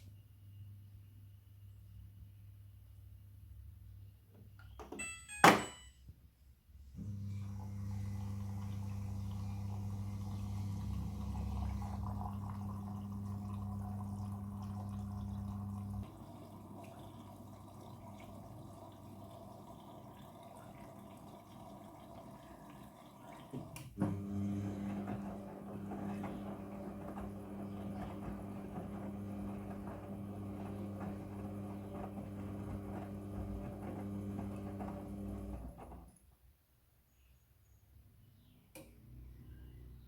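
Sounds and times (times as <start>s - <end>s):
washing machine running: 7.0s - 36.1s
washing machine hum: 7.0s - 36.2s
click: 38.7s - 39.0s.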